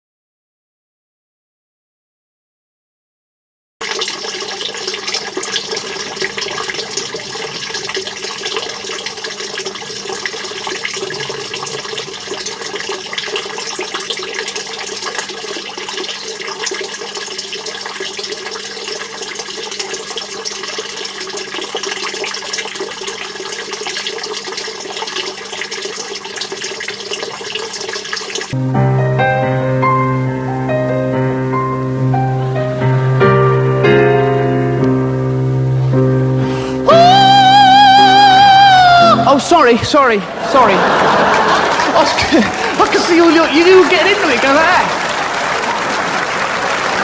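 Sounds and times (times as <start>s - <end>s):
rushing water-like noise: 3.8s - 28.6s, 36.6s - 47.0s.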